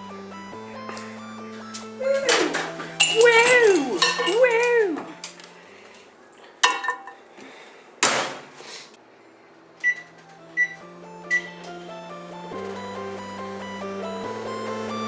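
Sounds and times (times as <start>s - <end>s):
short high keypad beeps: 9.8s - 11.6s.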